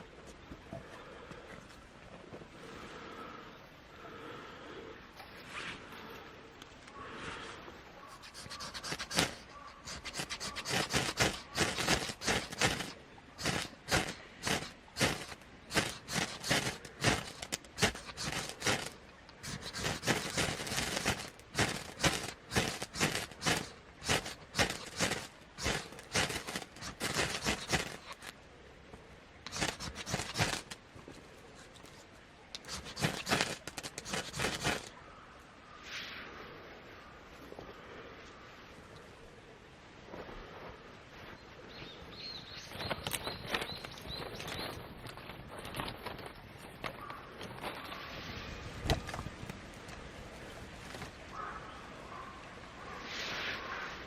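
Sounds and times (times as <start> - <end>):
rhythmic rasping on wood: 8.1 - 28.3, 29.5 - 30.8, 32.6 - 34.9.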